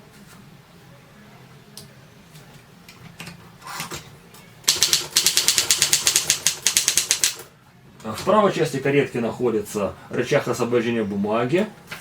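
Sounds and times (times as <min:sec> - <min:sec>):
typewriter mechanism rustle: 0:04.7 - 0:07.4
typewriter ratchet clicking: 0:04.7 - 0:07.5.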